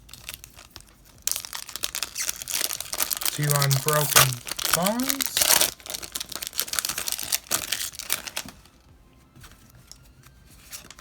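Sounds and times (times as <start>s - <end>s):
foil wrapper crinkling and tearing: 0.0s - 8.7s.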